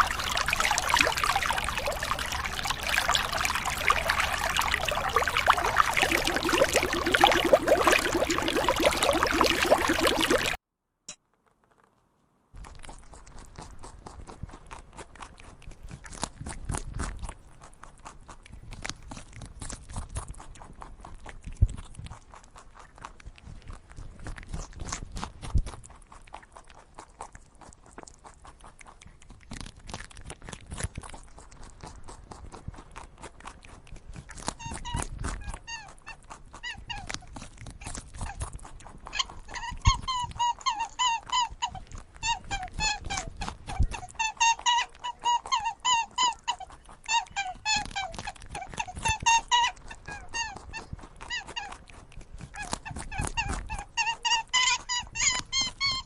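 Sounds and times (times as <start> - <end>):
dog whining yelps: 34.6 - 37.2, 39.2 - 51.8, 52.6 - 56.0.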